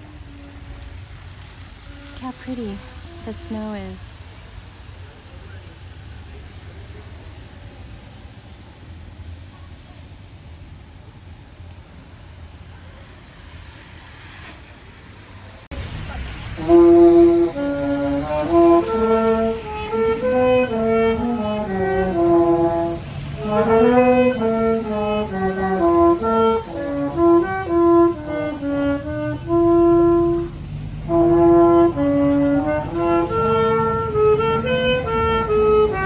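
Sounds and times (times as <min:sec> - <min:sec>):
french horn: 0:15.5 - 0:36.0
saxophone: 0:15.8 - 0:36.0.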